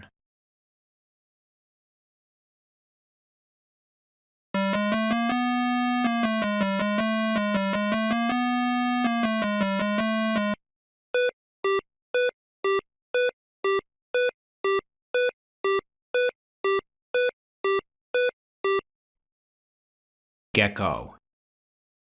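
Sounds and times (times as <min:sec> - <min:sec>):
electronic synthesizer music: 0:04.6 - 0:10.6.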